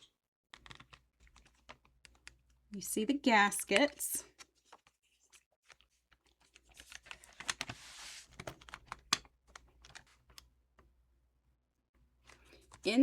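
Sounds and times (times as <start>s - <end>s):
rustling scrape: 7.7s - 8.4s.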